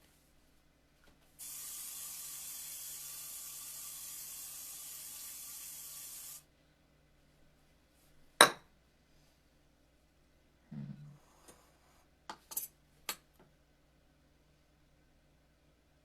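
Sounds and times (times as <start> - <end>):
cooking spray hissing: 1.4 - 6.5.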